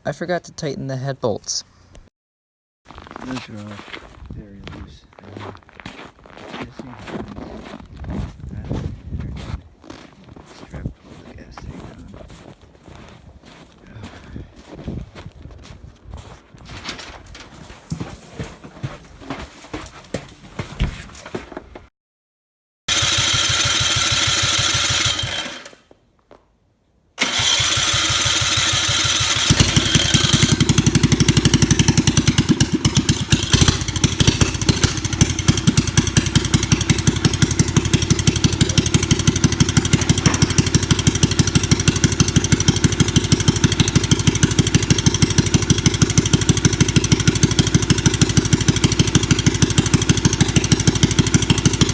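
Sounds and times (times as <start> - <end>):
small engine starting and running: 22.9 - 25.9, 27.2 - 51.9.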